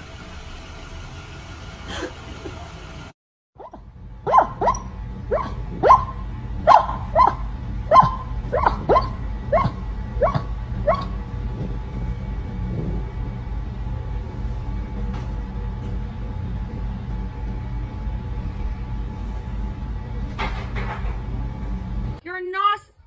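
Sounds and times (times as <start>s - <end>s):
dog barking: 3.6s - 11.2s.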